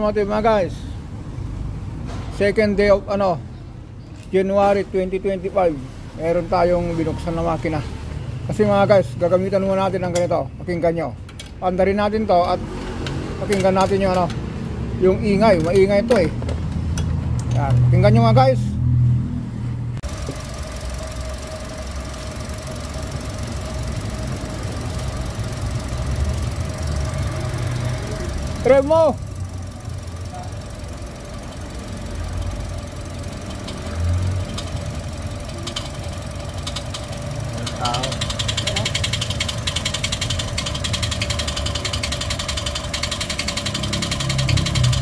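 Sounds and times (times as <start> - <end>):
car engine rumbling: 5.0 - 45.0
high-pitched engine whine: 18.7 - 45.0.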